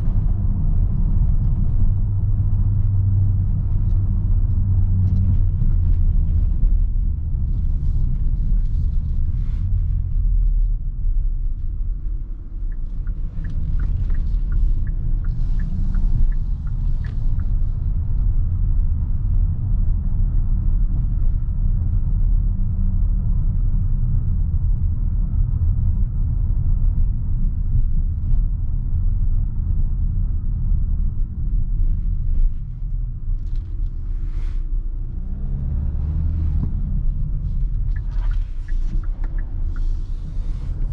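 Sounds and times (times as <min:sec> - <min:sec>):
engine and road noise rumble: 0:00.0 - 0:40.9
light regular ticking: 0:12.3 - 0:17.8, 0:34.8 - 0:40.9.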